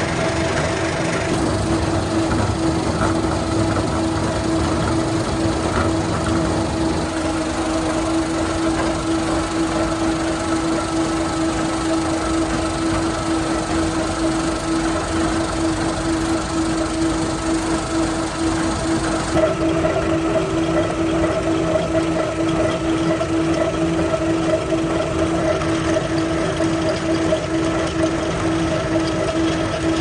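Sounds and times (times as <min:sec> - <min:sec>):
factory machinery running: 0:00.0 - 0:30.0.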